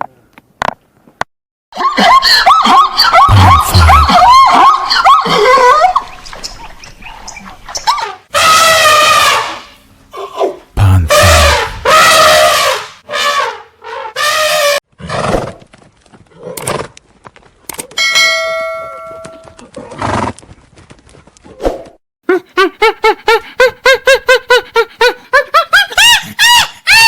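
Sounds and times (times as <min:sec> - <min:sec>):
animal calls: 0:10.2 - 0:12.9
rapid short pitched calls: 0:10.8 - 0:12.9
ringing bell-like tone: 0:18.0 - 0:19.6.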